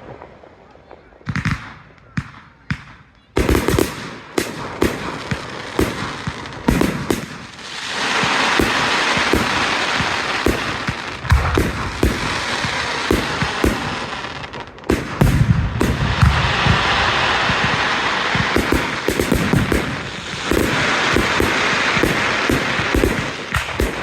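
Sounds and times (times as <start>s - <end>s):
fireworks bangs: 0.0s - 24.0s
fireworks crackle: 0.0s - 24.0s
heavy fireworks booms: 0.0s - 24.0s.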